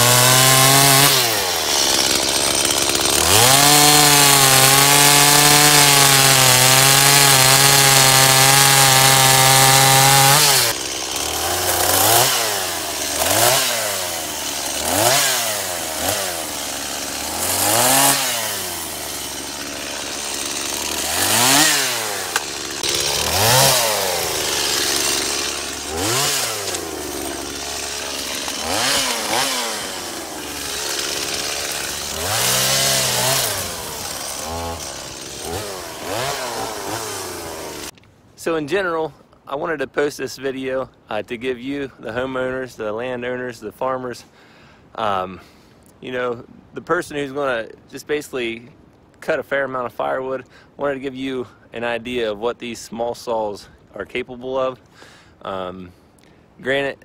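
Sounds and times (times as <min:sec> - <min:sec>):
chainsaw revving: 0:00.0 - 0:38.0
chainsaw cutting wood: 0:00.0 - 0:38.1.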